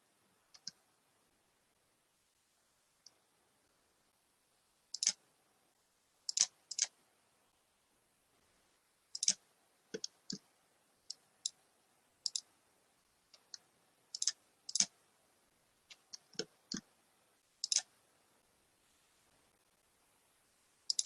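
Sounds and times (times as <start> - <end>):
computer mouse clicking: 0.5 - 0.8, 4.9 - 5.2, 6.3 - 6.9, 9.1 - 10.4, 12.2 - 12.5, 13.3 - 14.9, 17.6 - 17.9.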